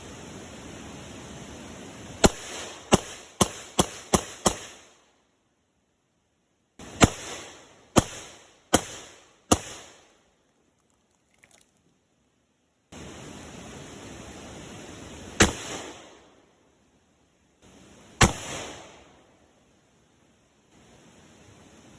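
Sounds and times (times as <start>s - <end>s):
shotgun shots: 2.2s - 4.8s, 6.8s - 10.1s, 15.4s - 16.1s, 18.2s - 19.0s.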